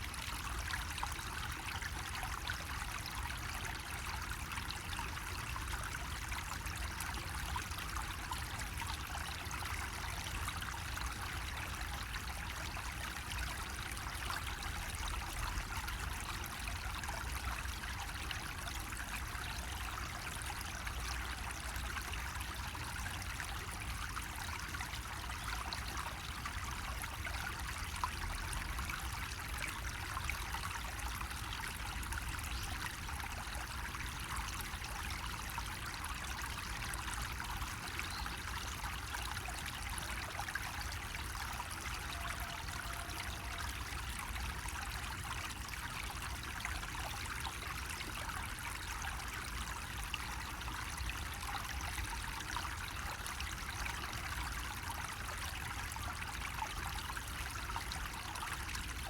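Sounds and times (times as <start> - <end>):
water trickling from spout: 0.0 - 59.0.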